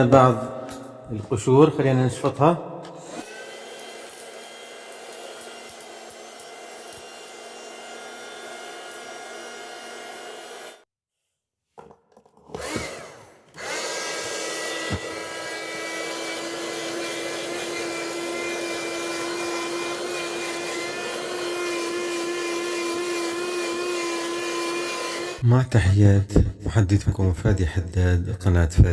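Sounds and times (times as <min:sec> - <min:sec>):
handheld vacuum cleaner whining: 0:02.9 - 0:10.8, 0:11.8 - 0:25.4.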